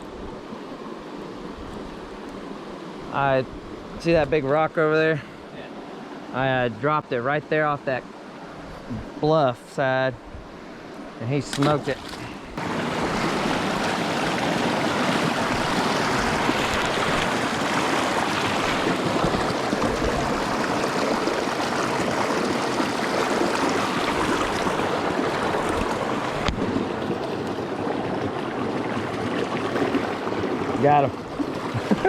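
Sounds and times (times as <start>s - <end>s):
water rushing over rocks: 11.3s - 32.0s.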